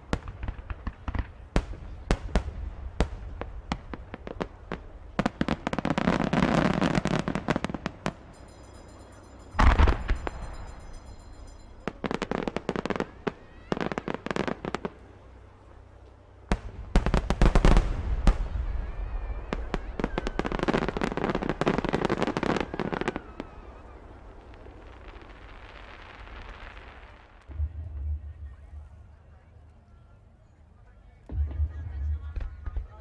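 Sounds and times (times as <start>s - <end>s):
fireworks crackling pops: 0.0s - 8.2s.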